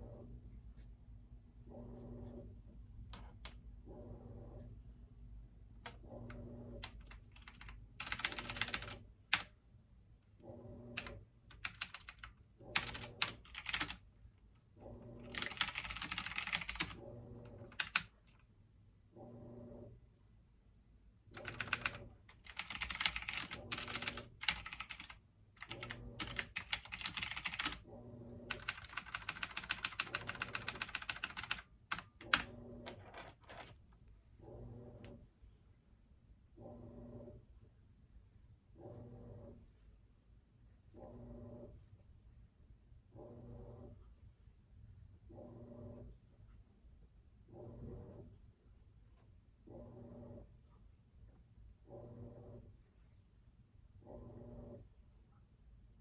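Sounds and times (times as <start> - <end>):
low steady hum: 0.0 - 56.0
typing on computer keyboard: 6.8 - 9.6, 11.0 - 14.0, 15.2 - 18.4, 21.3 - 27.8, 28.5 - 33.8.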